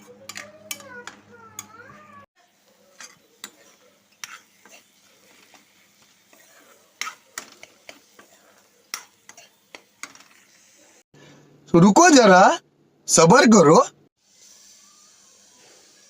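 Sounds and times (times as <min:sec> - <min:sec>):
spoon scraping in pan: 0:00.0 - 0:11.0
faint sizzle: 0:00.0 - 0:16.0.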